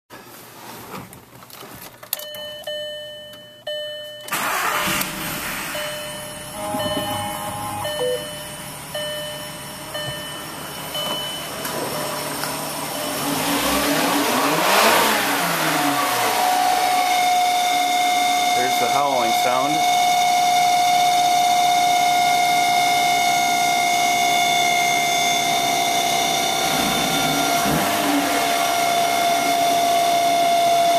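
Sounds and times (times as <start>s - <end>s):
car engine running: 4.4s - 18.6s, 23.6s - 30.9s
short beeps: 5.7s - 12.0s.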